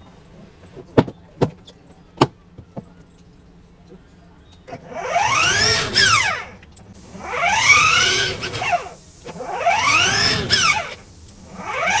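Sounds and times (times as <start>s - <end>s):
toy car electric motor whining: 4.7s - 12.0s.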